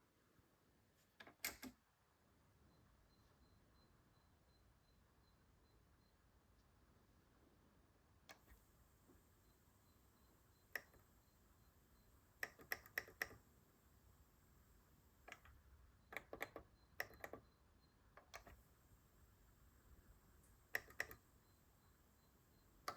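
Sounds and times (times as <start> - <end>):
cassette deck buttons clicking: 20.8 - 21.2.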